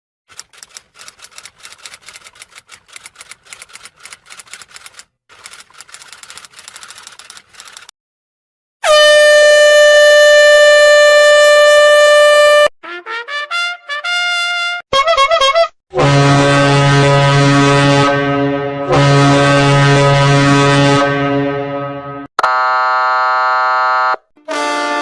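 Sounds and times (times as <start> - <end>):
typewriter keys clacking: 0.3 - 7.9
air horn blast: 8.8 - 25.0.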